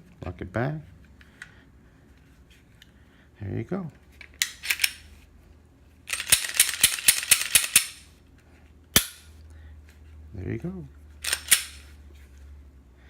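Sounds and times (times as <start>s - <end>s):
pistol metallic clicks and rattles: 4.2s - 5.1s, 6.1s - 8.1s, 9.0s - 9.3s, 11.2s - 11.9s.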